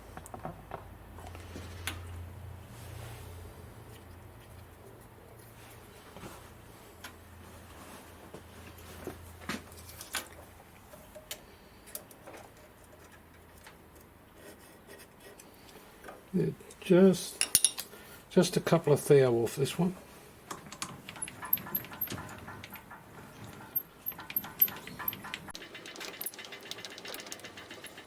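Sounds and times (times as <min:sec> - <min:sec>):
tools and metal parts clicking: 0:17.4 - 0:17.9, 0:20.5 - 0:28.0.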